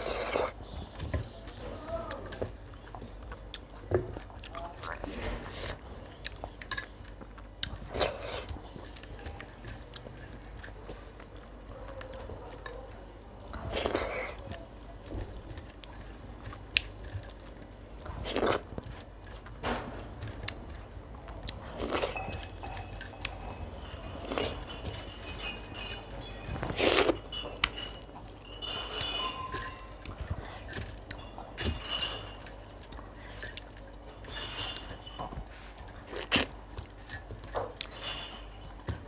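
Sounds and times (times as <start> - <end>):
chewing and slurping: 0.0 - 1.6, 2.9 - 39.0
dishes and utensils clinking: 7.6 - 11.1, 15.1 - 39.0.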